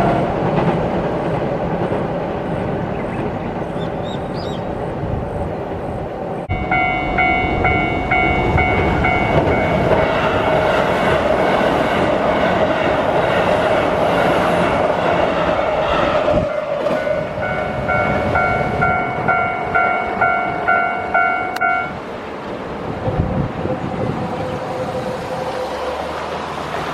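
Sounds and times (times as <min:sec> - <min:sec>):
electric train rumbling over steel bridge: 0:00.0 - 0:26.9
level-crossing warning bell ringing: 0:06.5 - 0:12.6, 0:17.0 - 0:22.0.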